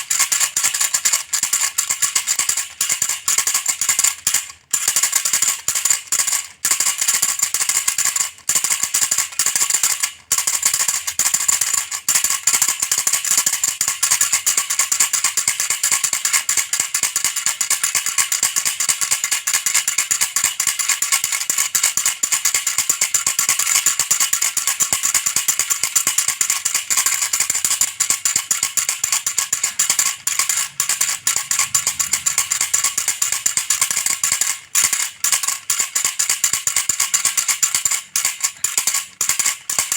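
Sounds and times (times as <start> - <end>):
baby rattle shaken: 10.7 - 39.9.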